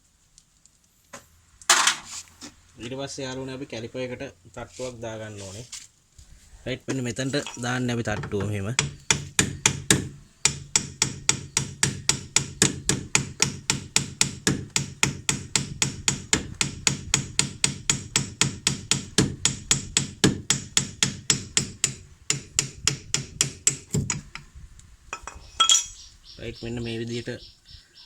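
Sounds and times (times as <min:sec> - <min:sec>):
hammer striking brake caliper: 0:08.2 - 0:24.2.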